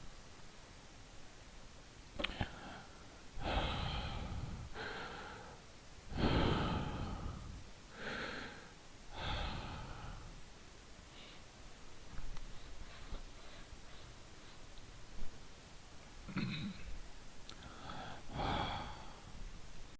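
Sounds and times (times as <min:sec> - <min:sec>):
person breathing heavily: 0:02.2 - 0:11.6, 0:12.4 - 0:14.8, 0:17.6 - 0:19.6.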